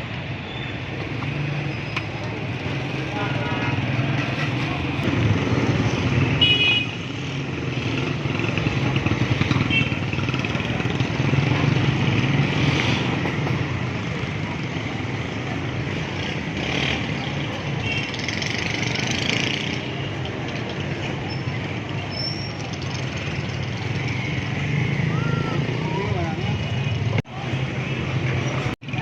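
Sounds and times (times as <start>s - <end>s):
cars passing: 0.0s - 29.0s
motorcycles passing: 0.0s - 29.0s.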